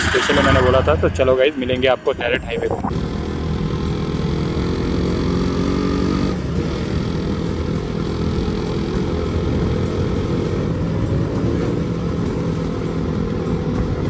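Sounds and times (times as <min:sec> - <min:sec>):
motorcycle engine running: 0:02.9 - 0:14.0.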